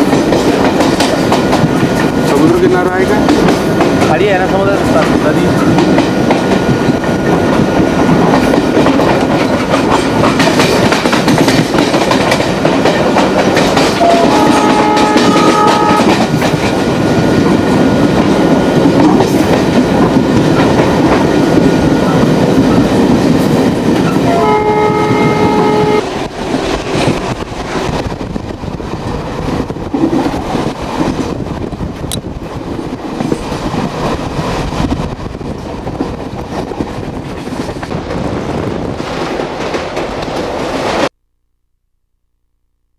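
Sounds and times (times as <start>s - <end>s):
train rumbling on rails: 0.0s - 41.1s
locomotive horn blasts: 14.0s - 16.2s, 24.2s - 26.1s.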